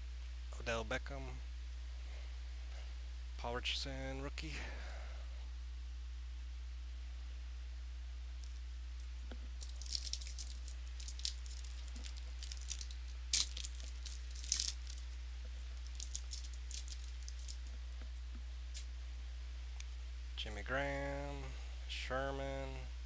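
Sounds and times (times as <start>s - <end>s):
low electrical hum: 0.0s - 23.0s
card wrappers crinkling: 8.4s - 17.8s.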